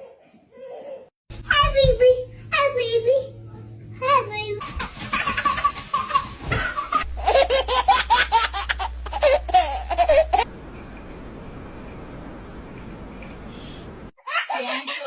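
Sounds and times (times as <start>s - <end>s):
baby laughing: 4.6s - 10.5s
faint steady hiss: 10.4s - 14.1s.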